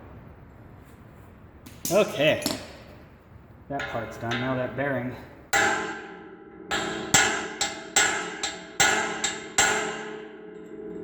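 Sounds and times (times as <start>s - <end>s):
hammer striking metal: 3.8s - 11.0s.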